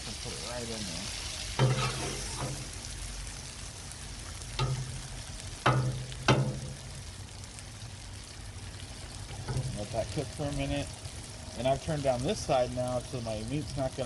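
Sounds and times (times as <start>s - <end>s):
food sizzling on a griddle: 0.0s - 14.0s
metal spatula striking griddle: 1.6s - 2.6s, 4.6s - 5.0s, 5.6s - 6.8s.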